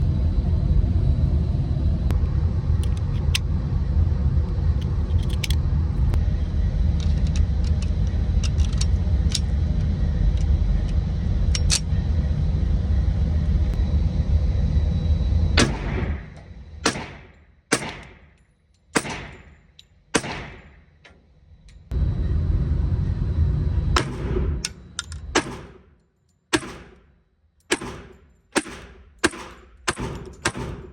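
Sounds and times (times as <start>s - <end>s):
low rumble: 0.0s - 18.0s, 20.6s - 25.7s
pistol shots: 15.6s - 18.3s, 19.0s - 19.5s, 20.2s - 20.8s, 25.4s - 25.8s, 26.5s - 27.1s, 27.7s - 30.9s.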